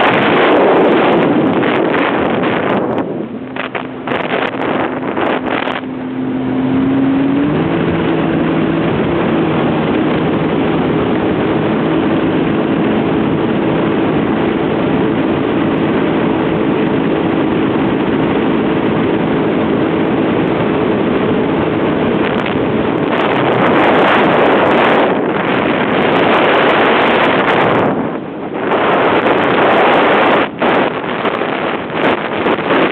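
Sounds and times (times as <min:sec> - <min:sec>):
jet ski engine: 0:00.0 - 0:32.9
rush of wind and water spray: 0:00.0 - 0:32.9.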